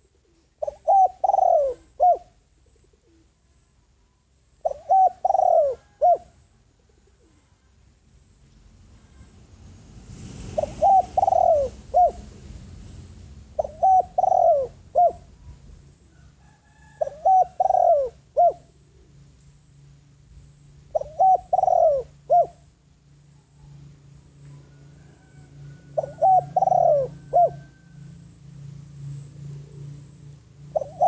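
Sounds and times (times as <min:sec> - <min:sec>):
dove cooing: 0:00.0 - 0:03.7, 0:04.5 - 0:07.7, 0:10.6 - 0:12.6, 0:13.5 - 0:19.3, 0:20.6 - 0:28.1, 0:29.0 - 0:31.0.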